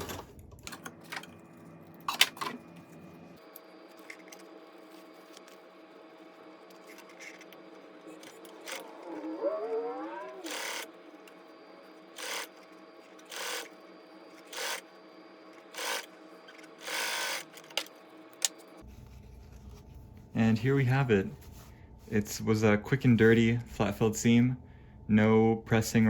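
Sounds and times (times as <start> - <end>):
sewing machine stitching: 6.7 - 11.4, 12.1 - 14.9, 15.6 - 17.8.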